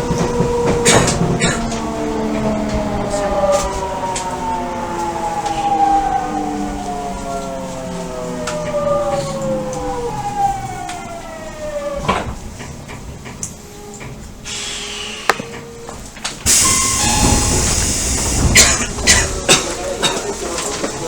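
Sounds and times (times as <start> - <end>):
train motor whine gliding downward: 0.0 - 12.1, 15.0 - 21.0
loud rushing rumble: 16.4 - 21.0.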